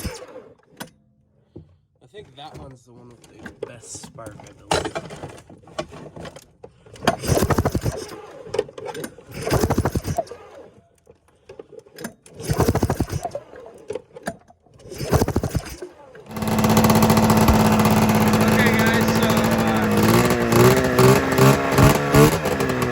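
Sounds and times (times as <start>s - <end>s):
engine cranking on recoil starter: 6.9s - 10.8s, 11.6s - 14.2s, 14.8s - 22.9s.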